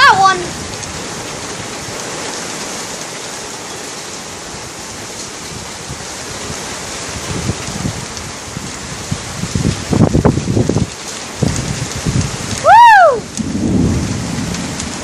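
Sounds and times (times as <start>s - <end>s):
heavy rain pouring: 0.0s - 15.0s
low thumps: 13.3s - 15.0s.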